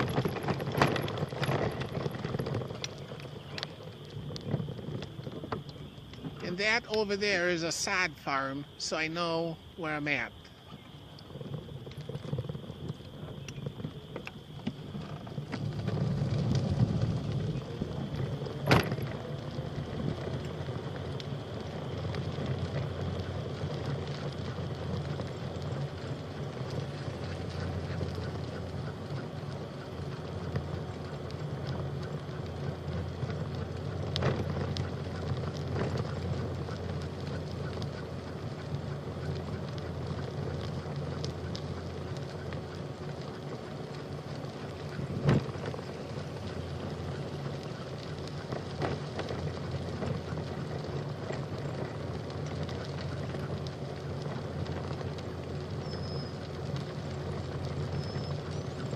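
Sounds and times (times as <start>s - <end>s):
bicycle tyre and wind noise: 0.0s - 6.8s, 10.4s - 58.9s.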